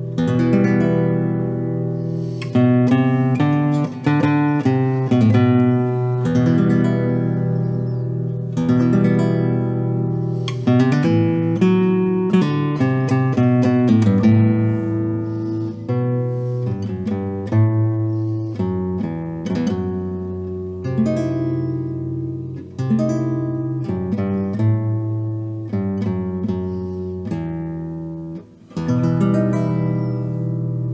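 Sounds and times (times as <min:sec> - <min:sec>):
nylon-string guitar playing: 0:00.0 - 0:30.9.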